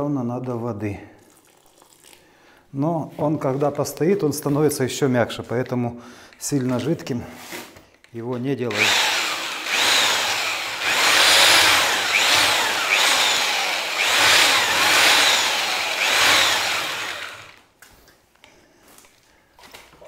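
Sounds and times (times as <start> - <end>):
electric drill mixing plaster: 8.7 - 17.7.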